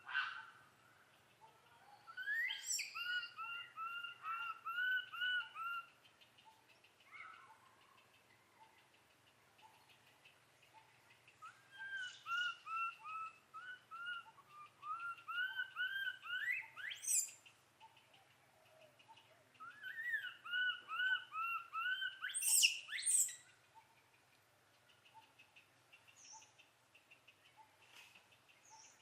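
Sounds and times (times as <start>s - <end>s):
bird singing with rising whistle: 2.0s - 5.8s, 11.4s - 17.4s, 19.6s - 23.4s.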